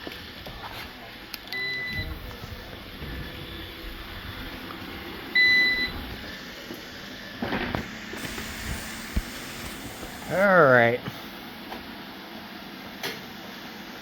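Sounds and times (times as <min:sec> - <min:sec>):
robot vacuum beep: 0:01.5 - 0:02.2, 0:05.3 - 0:06.1.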